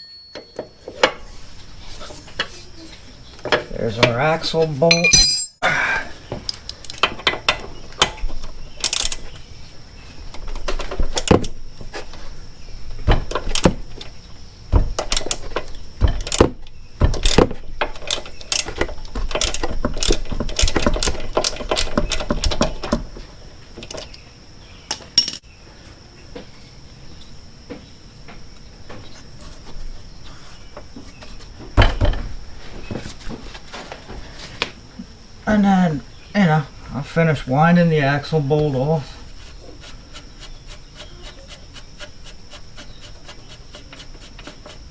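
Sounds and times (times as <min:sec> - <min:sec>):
metallic knock: 0:04.8 - 0:05.6
wrench clicking on bolt: 0:08.8 - 0:09.2, 0:17.2 - 0:22.7.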